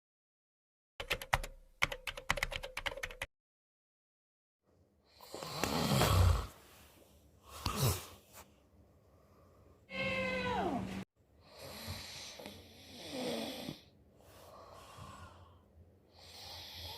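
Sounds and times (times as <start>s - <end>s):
keyboard typing clicks: 1.0s - 3.3s
man snoring: 5.2s - 6.6s, 11.4s - 13.9s, 16.1s - 16.9s.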